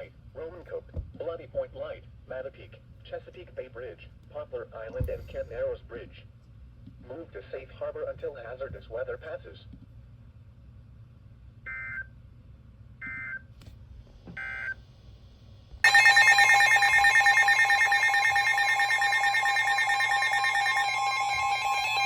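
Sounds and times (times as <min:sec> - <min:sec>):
two-tone attention alarm: 0:15.8 - 0:22.0
high buzzing data bursts: 0:15.9 - 0:22.0.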